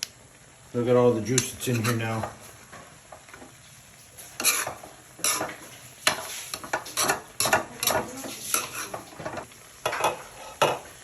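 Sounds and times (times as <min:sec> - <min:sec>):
light sizzle: 0:00.0 - 0:11.0
utensil scraping a pot: 0:01.6 - 0:02.6, 0:04.0 - 0:10.9.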